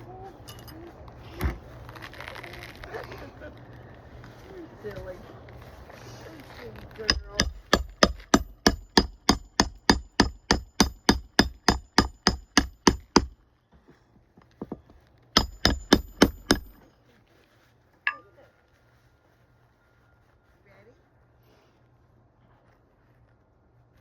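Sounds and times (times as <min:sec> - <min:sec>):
hammer blows nailing shingle: 0:06.9 - 0:13.4, 0:14.6 - 0:16.9.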